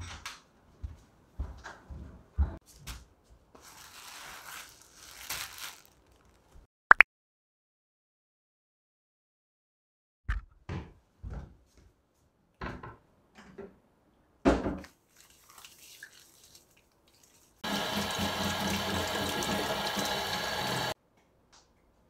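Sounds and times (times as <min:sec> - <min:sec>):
tap water running into sink: 0:17.6 - 0:21.0.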